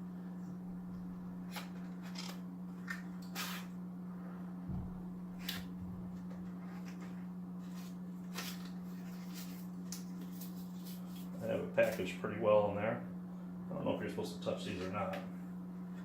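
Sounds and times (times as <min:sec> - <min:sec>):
steady low hum: 0:00.0 - 0:16.0
cardboard scraping and rustling: 0:05.4 - 0:11.4.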